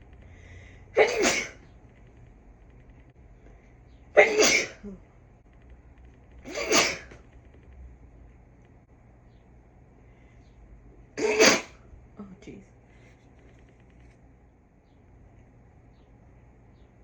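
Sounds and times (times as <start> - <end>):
person sneezing: 1.0 - 1.6, 4.2 - 4.9, 6.4 - 7.2, 11.2 - 11.8.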